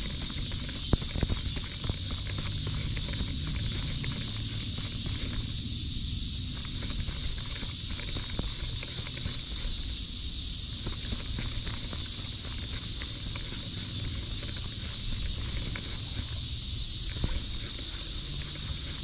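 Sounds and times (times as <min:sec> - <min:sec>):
cicada chorus droning: 0:00.0 - 0:19.0.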